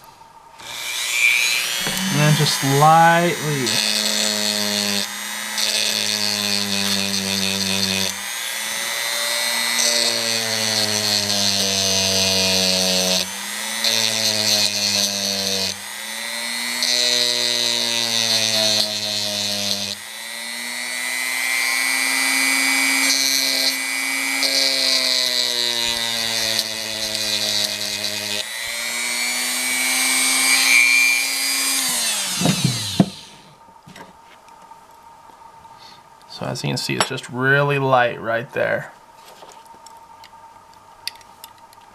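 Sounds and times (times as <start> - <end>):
rotary tool grinding metal: 0.6 - 33.5.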